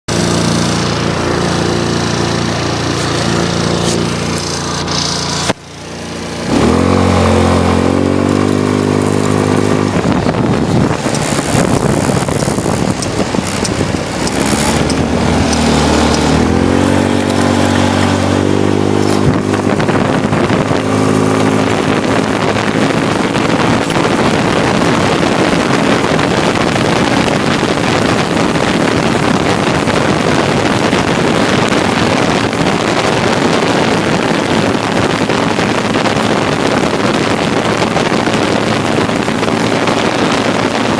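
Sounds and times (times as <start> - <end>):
small engine revving: 0.1 - 40.9
wind rushing over microphone: 0.1 - 40.9.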